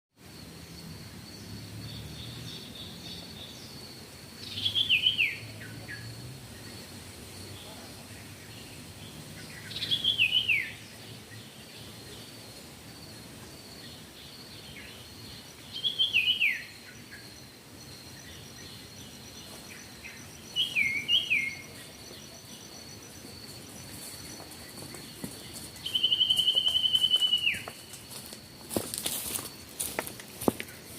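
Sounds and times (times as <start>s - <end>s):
faint insect drone: 0.2s - 30.9s
bird calling whistled notes: 4.4s - 6.0s, 9.7s - 10.8s, 15.8s - 16.8s, 20.1s - 21.8s, 25.8s - 28.0s.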